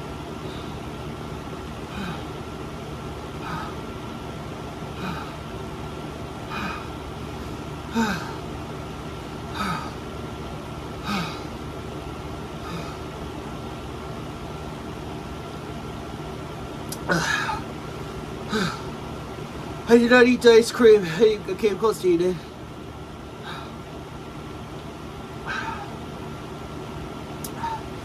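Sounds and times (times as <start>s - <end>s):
steady hum: 0.0s - 28.0s
person breathing hard: 1.8s - 2.4s, 3.3s - 4.0s, 4.9s - 8.6s, 9.3s - 10.1s, 11.0s - 11.6s, 12.5s - 13.2s, 18.4s - 19.0s, 23.4s - 23.9s, 25.4s - 26.0s, 27.5s - 28.0s.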